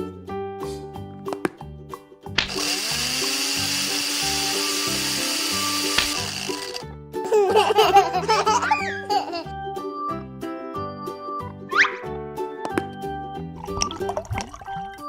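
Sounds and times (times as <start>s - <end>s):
children's music with bouncing bass: 5.9s - 15.0s.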